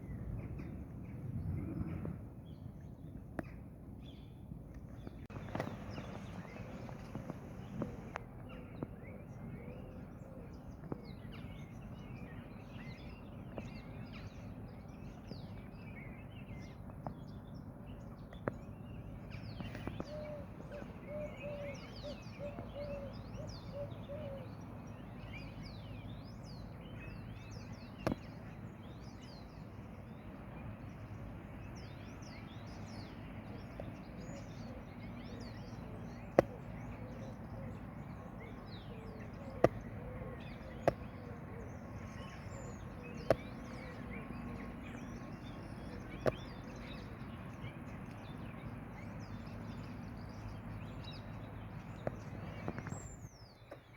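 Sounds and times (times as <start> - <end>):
songbirds chirping and twittering: 0.0 - 53.9.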